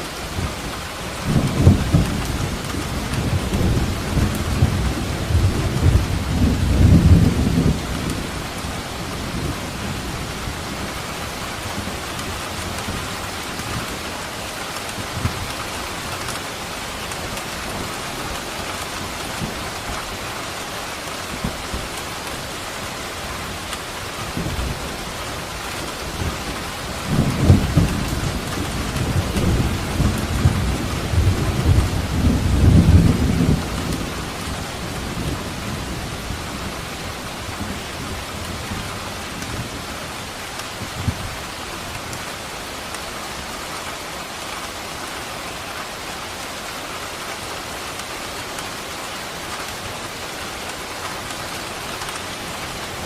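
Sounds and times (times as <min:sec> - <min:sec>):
steady rain: 0:00.0 - 0:53.0
thunder rumbling: 0:01.2 - 0:11.0, 0:25.7 - 0:39.8.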